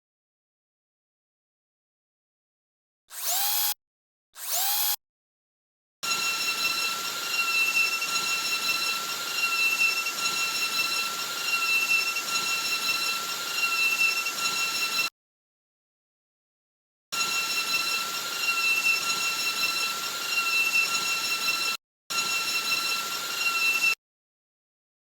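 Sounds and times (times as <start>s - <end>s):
electric drill whining: 3.1s - 3.8s, 4.4s - 5.0s, 6.1s - 15.1s, 17.2s - 24.0s.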